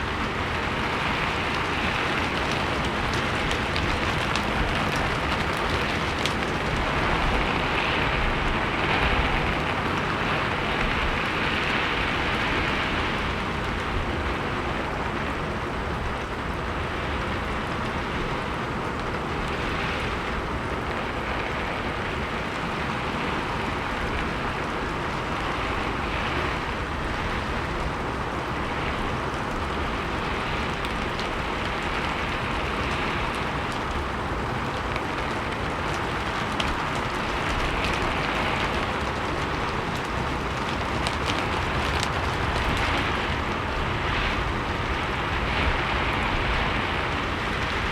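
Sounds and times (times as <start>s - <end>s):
rain falling on a roof: 0.0s - 47.9s.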